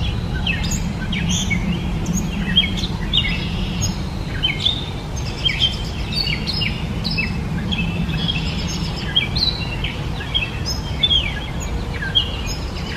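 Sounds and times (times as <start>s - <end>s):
bird singing squeaky chirps: 0.0s - 12.9s
steady low rumble: 0.0s - 12.9s.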